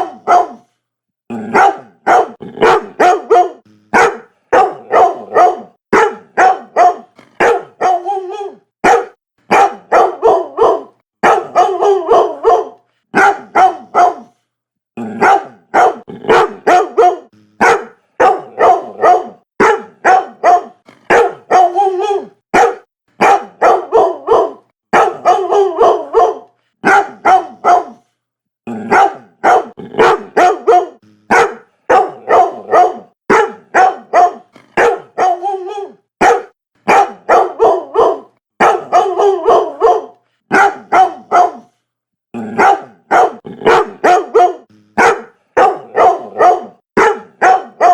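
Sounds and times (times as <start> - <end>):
dog barking: 0.0 - 0.7, 1.3 - 14.4, 15.0 - 28.1, 28.7 - 41.8, 42.4 - 47.9.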